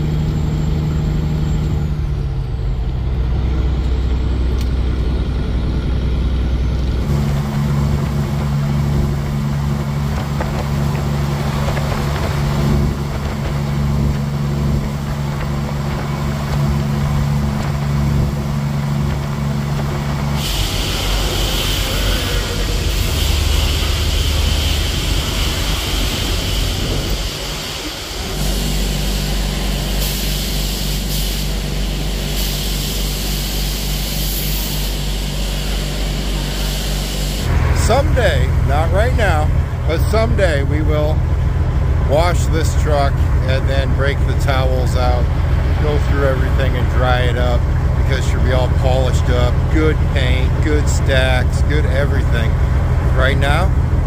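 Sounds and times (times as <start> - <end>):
diesel truck engine running: 0.0 - 54.0
steady hiss: 19.4 - 41.2.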